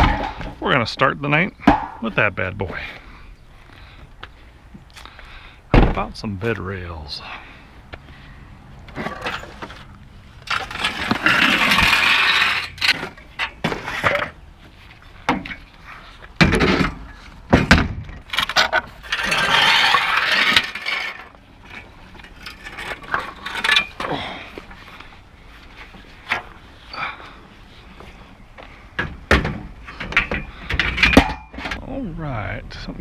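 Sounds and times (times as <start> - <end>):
metal clanks and thuds: 0.0 - 0.6, 1.6 - 2.2, 5.7 - 6.1, 16.4 - 24.2, 29.0 - 31.9
metal-on-metal scrapes: 9.0 - 14.3, 18.3 - 24.0.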